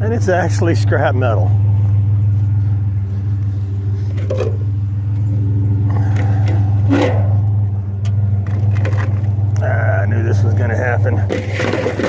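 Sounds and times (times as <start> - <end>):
truck engine running: 0.0 - 12.0.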